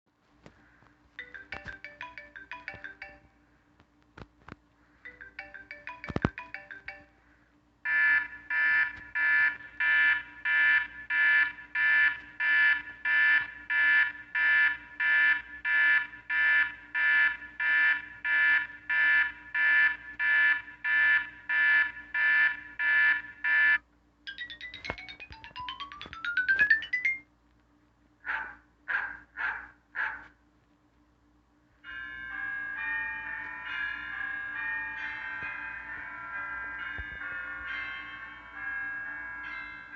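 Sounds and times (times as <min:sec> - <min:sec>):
mallet-like ringtone melody: 0:01.2 - 0:03.4, 0:05.1 - 0:07.3, 0:24.3 - 0:27.3, 0:31.9 - 0:39.9
pulsing electronic alarm tone: 0:07.9 - 0:27.2.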